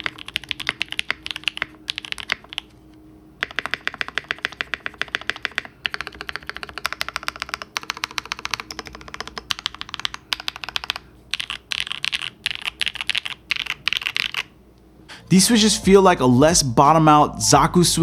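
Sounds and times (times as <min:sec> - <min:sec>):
mechanical keyboard typing: 0:00.0 - 0:02.7, 0:03.4 - 0:14.5.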